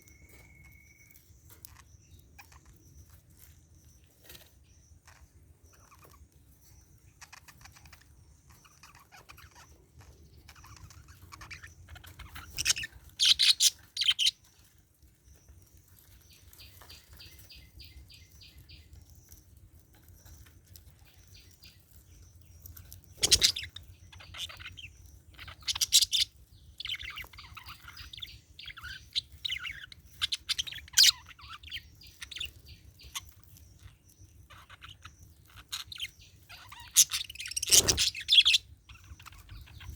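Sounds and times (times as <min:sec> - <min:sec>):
budgerigar chattering and chirping: 0:07.1 - 0:14.4, 0:23.1 - 0:39.9.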